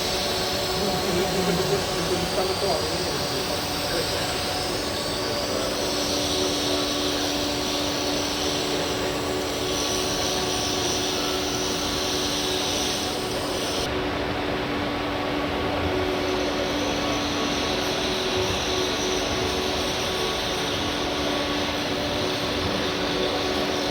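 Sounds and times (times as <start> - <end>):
grinding machine hum: 0.0 - 13.9.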